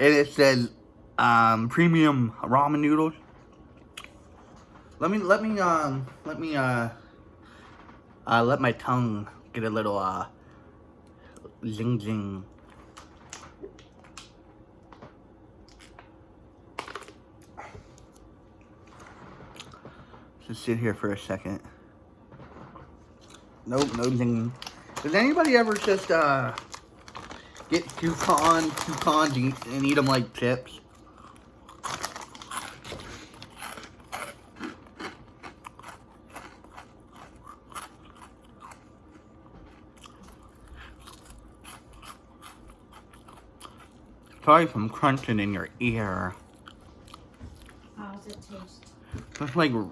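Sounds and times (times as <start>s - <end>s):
person chewing pecans: 15.6s - 16.1s, 23.2s - 44.8s.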